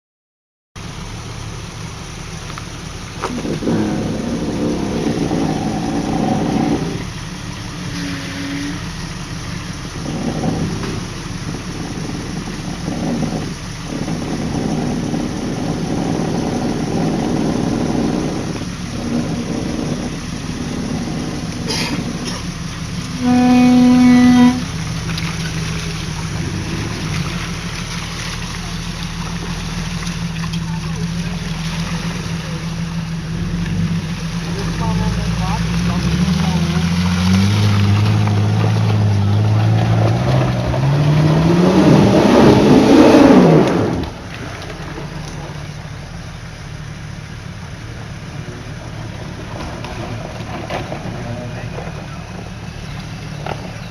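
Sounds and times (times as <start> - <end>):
vehicle engine running under load: 0.8 - 53.9
vehicle horn blast: 7.9 - 9.0, 23.1 - 24.8.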